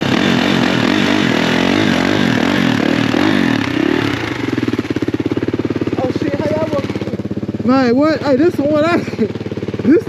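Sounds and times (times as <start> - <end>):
atv engine revving: 0.0 - 10.0.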